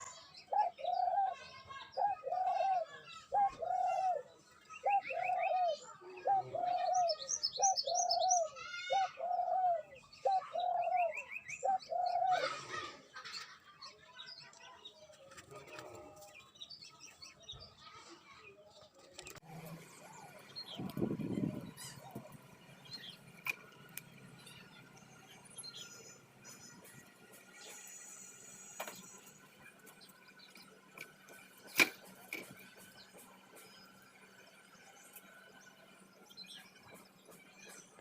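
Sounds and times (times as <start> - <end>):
small birds chirping: 0.0 - 38.0
dove cooing: 0.5 - 1.4, 2.0 - 12.9.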